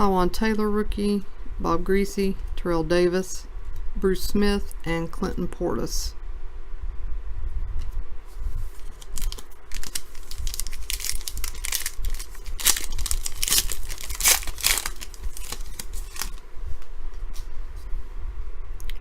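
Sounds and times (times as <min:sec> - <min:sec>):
plastic wrapper tearing and crinkling: 0:08.7 - 0:16.4.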